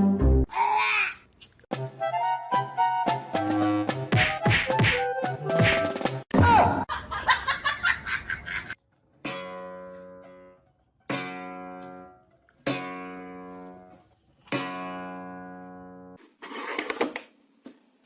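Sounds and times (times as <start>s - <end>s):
acoustic guitar strumming: 9.2s - 13.9s.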